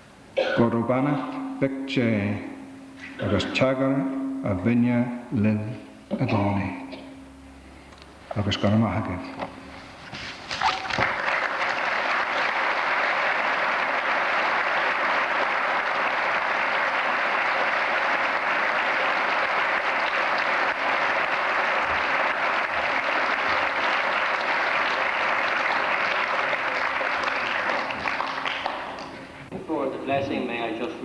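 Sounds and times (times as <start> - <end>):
congregation applauding: 10.5 - 29.5.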